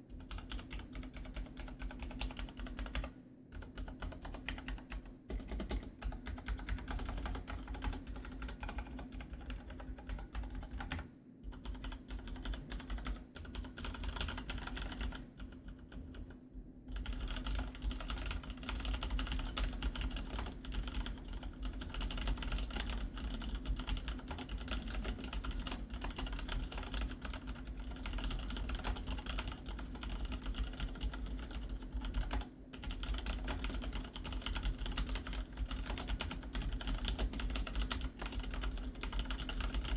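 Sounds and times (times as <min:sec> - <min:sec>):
mechanical keyboard typing: 0:00.1 - 0:16.3, 0:16.9 - 0:39.9.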